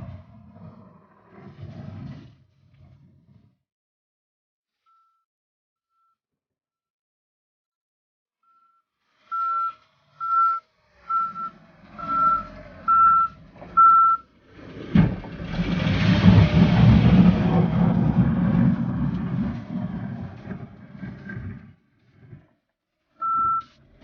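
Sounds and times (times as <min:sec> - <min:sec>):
reversing alarm beeping: 0:08.5 - 0:14.2, 0:23.2 - 0:23.7.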